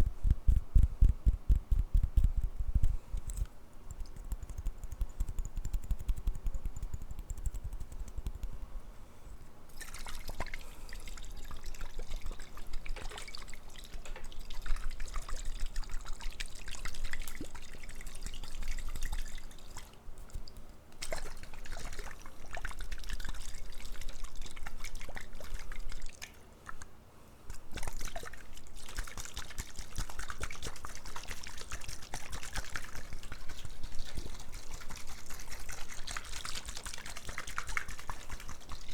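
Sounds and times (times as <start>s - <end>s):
low dull handling sound: 0.0s - 6.8s
water pouring and trickling: 9.7s - 20.0s, 27.7s - 38.9s
water drips and splashes: 9.7s - 26.9s, 27.5s - 38.9s.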